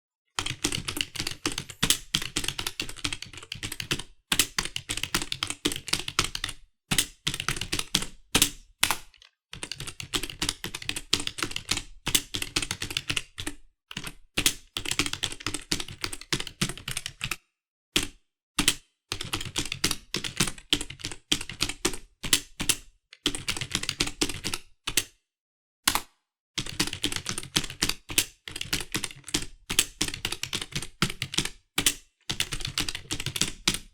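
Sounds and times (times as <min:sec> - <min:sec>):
computer keyboard typing: 0:00.4 - 0:06.5, 0:09.6 - 0:13.6, 0:19.2 - 0:24.6, 0:25.9 - 0:33.9.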